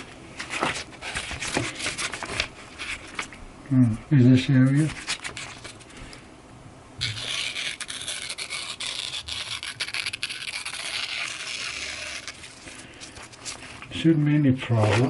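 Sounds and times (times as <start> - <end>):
knife slicing through paper: 7.0 - 12.6.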